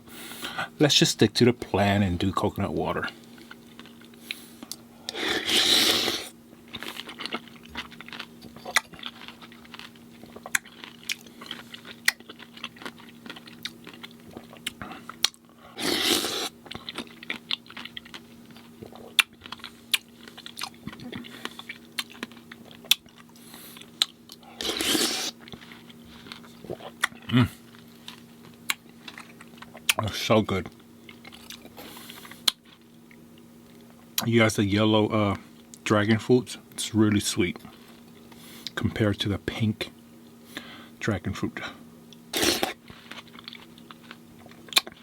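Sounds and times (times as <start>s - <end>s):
chewing with wet mouth clicks: 6.7s - 15.5s, 16.2s - 24.4s, 25.4s - 30.1s, 30.7s - 34.3s, 42.1s - 45.0s.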